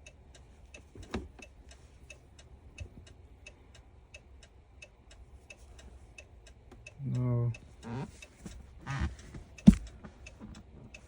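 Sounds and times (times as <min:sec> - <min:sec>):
faint thumps: 0:08.4 - 0:10.2.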